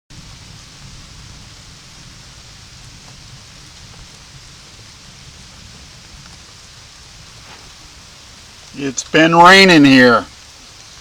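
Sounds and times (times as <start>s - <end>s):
steady rain hiss: 0.1s - 11.0s.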